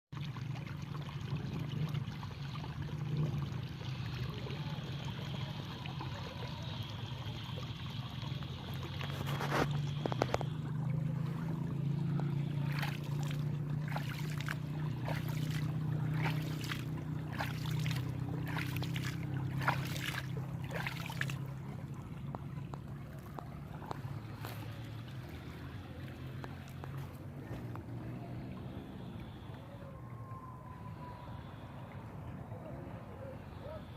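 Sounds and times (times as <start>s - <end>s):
short sharp splashes: 7.2s - 27.6s.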